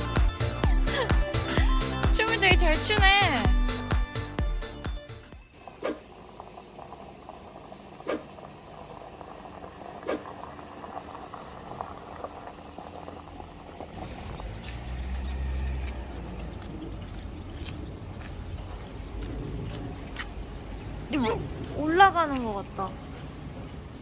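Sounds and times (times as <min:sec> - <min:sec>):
liquid bubbling with crackle: 0:05.6 - 0:14.8.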